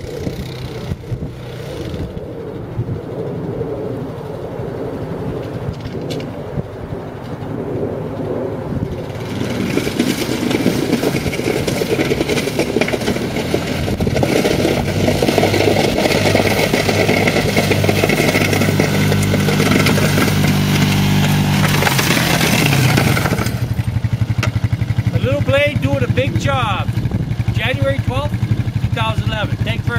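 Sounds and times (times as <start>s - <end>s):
plow blade scraping snow: 0.0s - 2.5s, 8.2s - 29.9s
atv engine under load: 0.0s - 2.7s, 8.8s - 29.9s.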